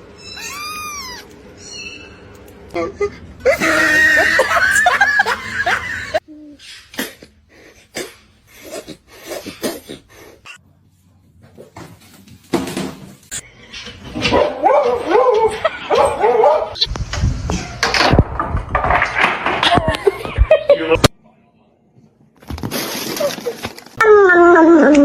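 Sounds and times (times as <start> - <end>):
people laughing: 3.5 - 6.2.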